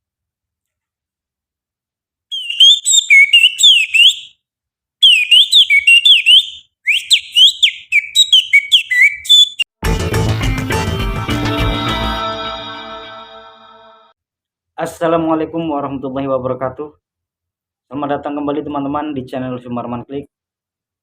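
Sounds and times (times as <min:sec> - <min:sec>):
finger whistling birdsong: 0:02.3 - 0:04.4, 0:05.0 - 0:09.7.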